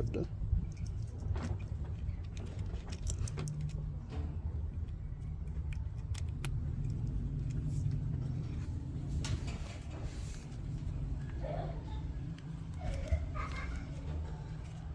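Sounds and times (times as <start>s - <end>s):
steady low hum: 0.0s - 14.9s
clicks and rattling of cord: 0.6s - 11.1s.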